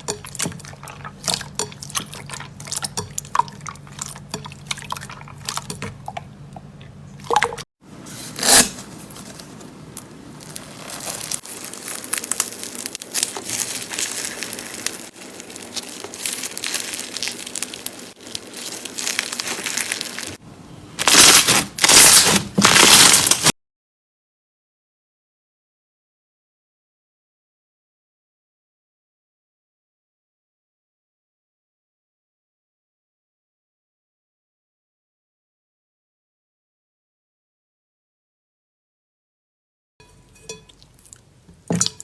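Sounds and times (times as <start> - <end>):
slime crackling and crunching: 10.3 - 20.4, 21.0 - 23.5.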